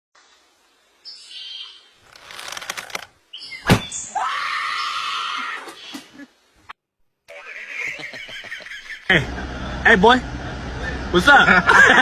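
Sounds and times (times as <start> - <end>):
long high scream: 4.1 - 5.8.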